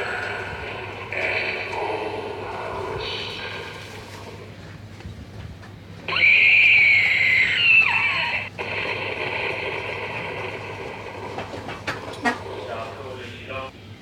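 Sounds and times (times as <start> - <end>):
steady hissing: 0.0 - 4.9
recorded shriek from speaker: 6.1 - 8.5.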